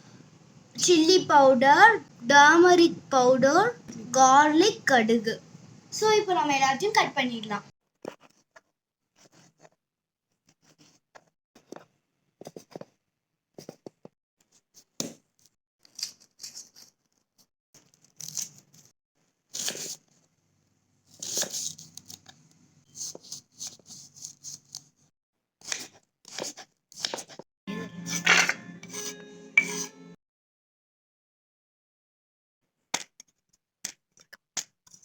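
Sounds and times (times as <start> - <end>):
knife scraping cuts: 19.6 - 20.0, 21.1 - 24.9, 25.6 - 27.4, 28.0 - 30.0
knife slicing vegetables: 21.1 - 24.9, 25.6 - 27.4, 28.0 - 30.0.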